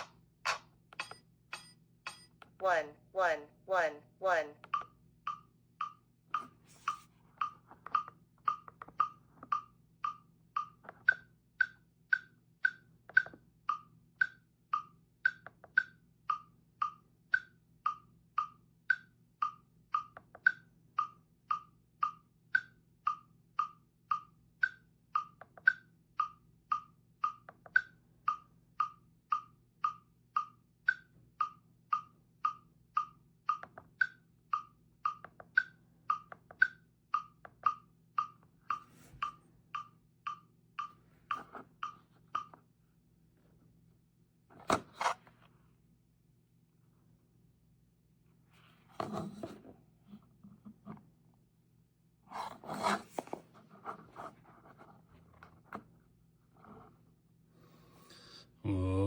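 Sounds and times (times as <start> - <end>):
electronic metronome beeps: 0.0 - 2.6, 4.6 - 42.6.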